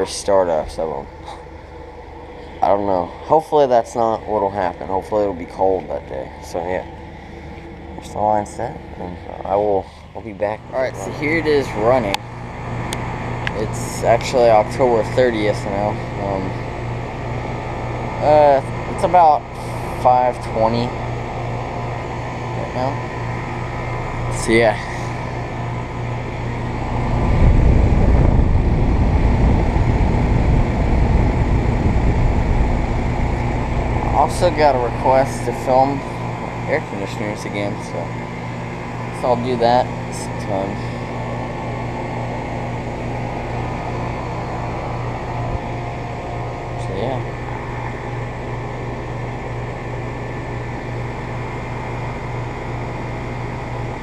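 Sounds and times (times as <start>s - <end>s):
air conditioner humming: 0.0s - 54.0s
low rumble: 26.2s - 36.2s.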